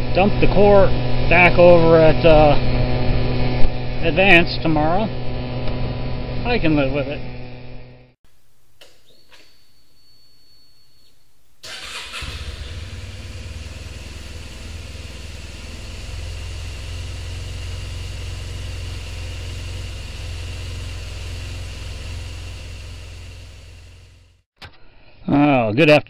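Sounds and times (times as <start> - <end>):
engine running: 0.0 - 8.1, 11.6 - 24.4.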